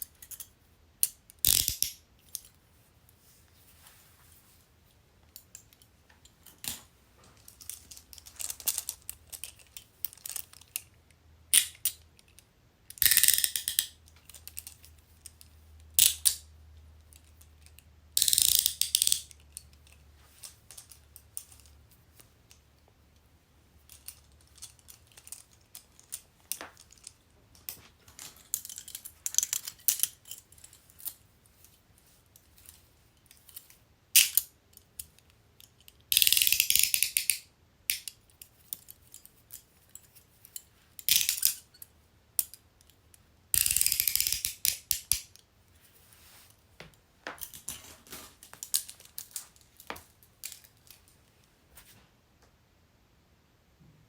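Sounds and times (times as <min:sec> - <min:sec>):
handcuffs ratcheting clicks: 0:00.0 - 0:02.6, 0:11.5 - 0:15.4, 0:17.0 - 0:21.8, 0:23.9 - 0:27.8, 0:28.5 - 0:31.2, 0:33.5 - 0:42.9, 0:43.6 - 0:45.4.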